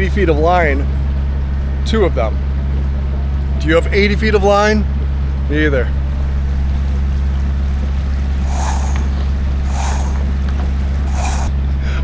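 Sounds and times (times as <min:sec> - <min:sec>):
boat engine humming: 0:05.2 - 0:11.5
short hissing rushes: 0:06.2 - 0:11.5.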